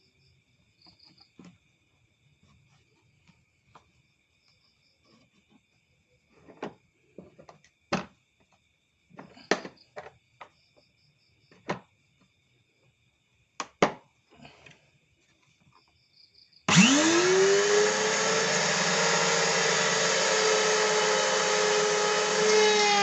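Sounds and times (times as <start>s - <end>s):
crickets chirring: 0.0s - 16.7s.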